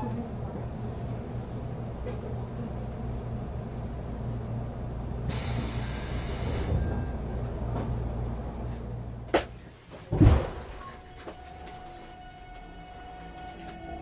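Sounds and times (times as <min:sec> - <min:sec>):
train interior rumble and hum: 0:00.0 - 0:14.0
compressed air hiss: 0:05.3 - 0:06.7.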